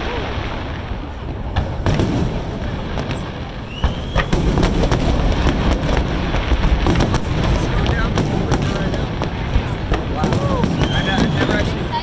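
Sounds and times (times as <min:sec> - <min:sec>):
fireworks booming: 0:00.0 - 0:12.0
fireworks popping and crackling: 0:00.0 - 0:12.0
rising firework whistle: 0:03.5 - 0:05.2, 0:10.2 - 0:12.0.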